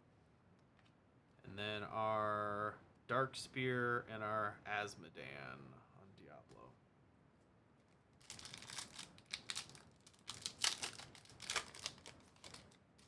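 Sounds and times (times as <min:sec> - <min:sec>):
wrapper crinkling and tearing: 0:08.2 - 0:13.0.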